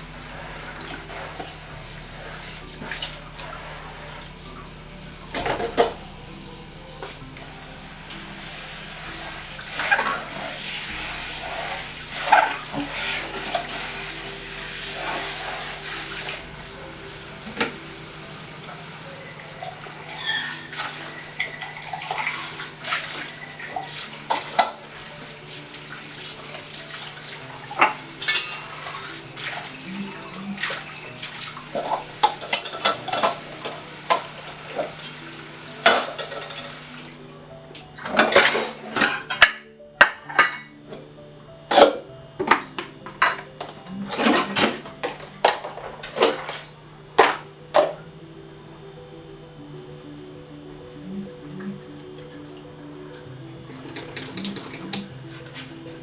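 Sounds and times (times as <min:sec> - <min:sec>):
low music drone: 0:00.0 - 0:40.0, 0:40.7 - 0:56.0
tap water running into sink: 0:00.0 - 0:48.9, 0:51.5 - 0:56.0
dishes and metal clattering: 0:05.3 - 0:06.2, 0:23.7 - 0:24.8, 0:27.7 - 0:29.1, 0:31.0 - 0:35.0, 0:35.8 - 0:36.8, 0:38.0 - 0:41.0, 0:41.7 - 0:48.0.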